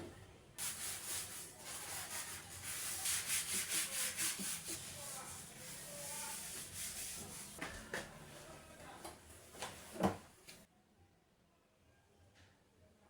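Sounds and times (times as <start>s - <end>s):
scraping rub: 0.6s - 7.6s.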